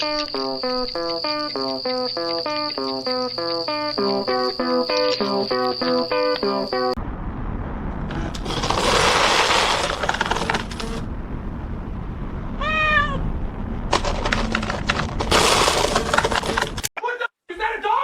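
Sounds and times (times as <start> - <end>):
hissing noise: 7.0 - 16.8
sharp clicks and clatter: 8.2 - 11.0, 13.9 - 16.9
cat meowing: 12.6 - 13.3.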